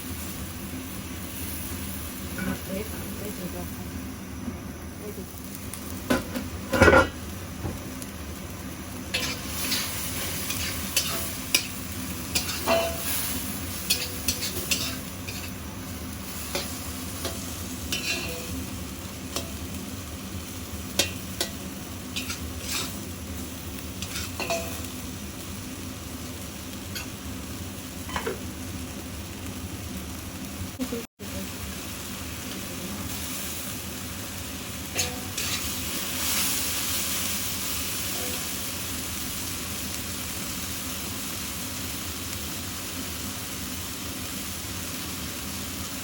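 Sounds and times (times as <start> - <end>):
food sizzling in a wok: 0.0 - 46.0
spatula scraping a pan: 9.1 - 15.6, 16.4 - 18.6, 22.2 - 23.0, 24.0 - 24.8, 35.0 - 36.6.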